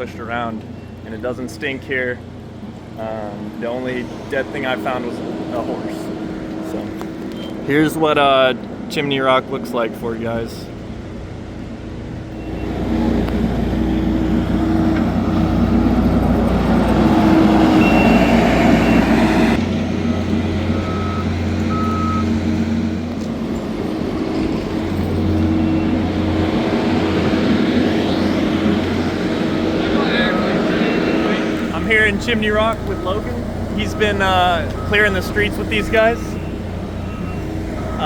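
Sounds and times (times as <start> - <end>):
heavy machinery running: 0.0 - 8.9, 9.5 - 38.0
truck engines running: 0.0 - 38.0
backup alarm beeps: 12.3 - 15.8, 17.1 - 22.4, 24.4 - 38.0.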